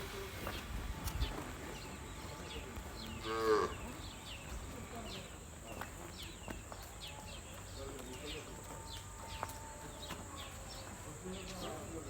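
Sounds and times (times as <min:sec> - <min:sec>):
cow mooing: 0:03.2 - 0:03.8.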